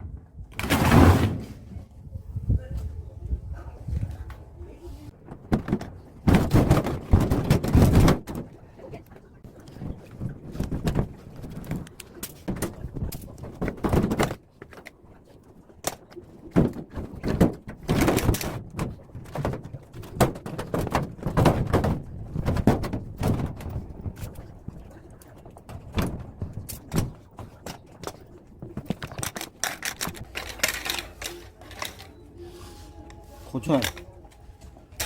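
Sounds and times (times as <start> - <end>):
metal knocks and clatter: 5.3 - 8.5, 16.5 - 24.8.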